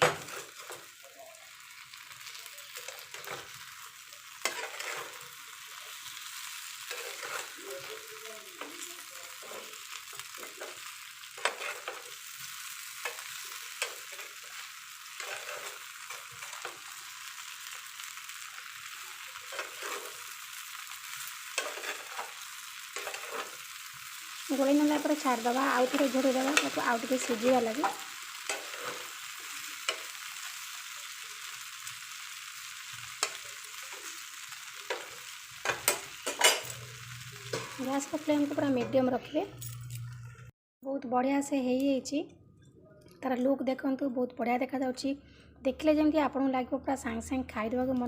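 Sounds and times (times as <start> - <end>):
spatula scraping a pan: 0.0 - 1.0, 2.0 - 25.2, 25.9 - 31.2, 32.6 - 39.0
food sizzling in hot oil: 0.0 - 40.5.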